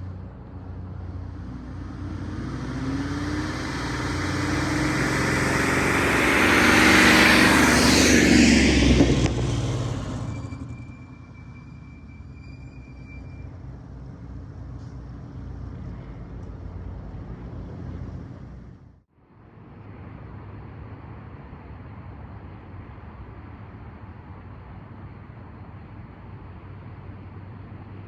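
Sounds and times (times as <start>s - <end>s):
car exhaust drive-by: 0.0s - 19.0s
low engine rumble: 0.0s - 28.0s.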